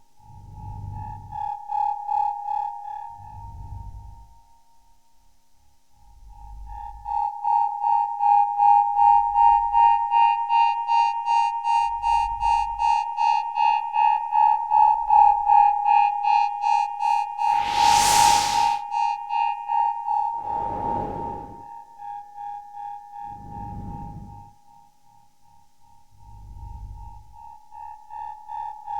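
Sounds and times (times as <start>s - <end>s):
low bass swells: 17.4s - 18.8s, 20.4s - 21.6s
whooshing noise sweep: 17.4s - 18.9s, 20.4s - 21.7s.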